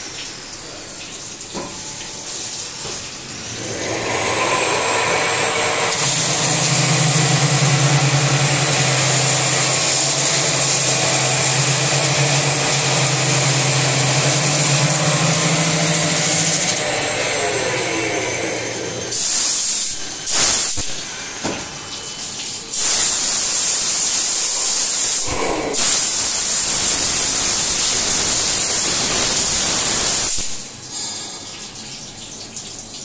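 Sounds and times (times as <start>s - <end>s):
low motor hum: 3.4s - 19.2s
polishing machine grinding: 3.4s - 20.0s, 24.5s - 30.4s
high whine: 3.4s - 20.1s.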